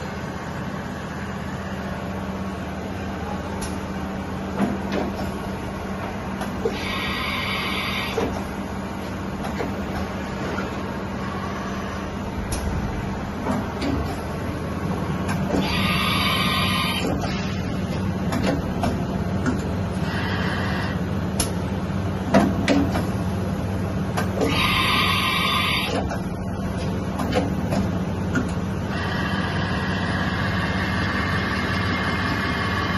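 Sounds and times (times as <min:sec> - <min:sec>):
machine whir: 0:00.0 - 0:32.9
milling machine humming: 0:00.0 - 0:32.9
sharp clicks and knocks: 0:17.9 - 0:19.8, 0:22.3 - 0:23.1, 0:26.8 - 0:28.6.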